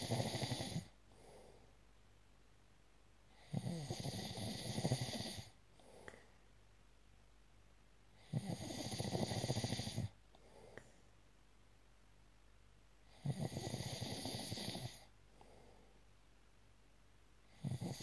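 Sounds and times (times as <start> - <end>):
rattling snores: 0.0 - 0.9, 3.4 - 5.6, 8.2 - 10.1, 13.1 - 15.1, 17.5 - 18.0
soft breath: 1.0 - 1.8, 5.4 - 6.5, 10.0 - 11.2, 15.0 - 16.1.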